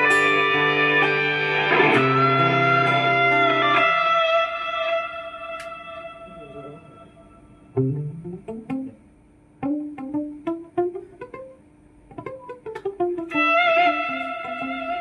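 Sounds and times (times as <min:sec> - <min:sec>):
plucked string melody: 0:07.8 - 0:09.0, 0:09.6 - 0:15.0.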